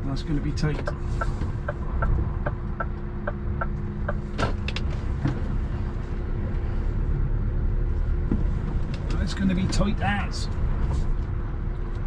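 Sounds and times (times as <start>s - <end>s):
diesel engine at low revs: 0.0s - 12.0s
indicator ticking: 0.8s - 4.2s.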